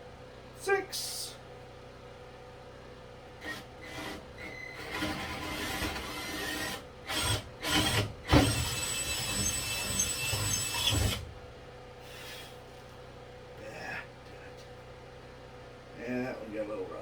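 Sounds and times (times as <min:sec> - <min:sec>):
power drill boring into wood: 0:04.8 - 0:11.2.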